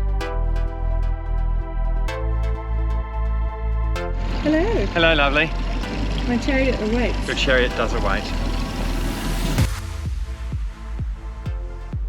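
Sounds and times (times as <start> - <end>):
electronic dance music: 0.0 - 12.0
sustained synth notes: 0.0 - 12.0
steady kick drum: 6.2 - 12.0.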